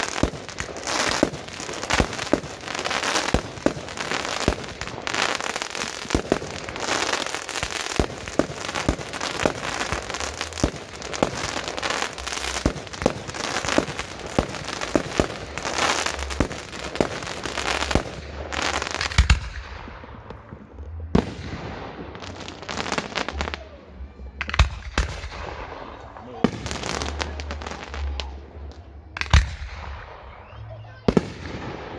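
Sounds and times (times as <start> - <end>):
firework shells bursting: 0.0 - 18.2
firework crackling: 0.0 - 23.7, 24.3 - 31.9.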